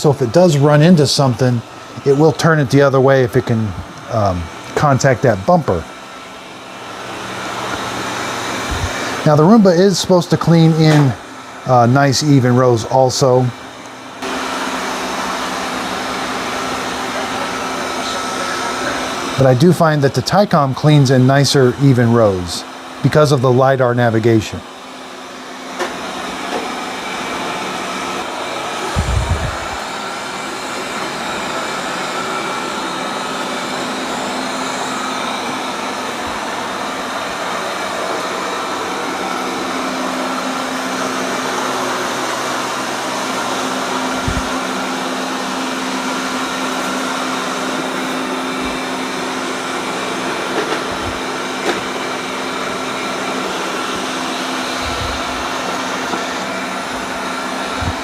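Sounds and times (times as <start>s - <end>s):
robot vacuum whirring: 25.5s - 58.0s.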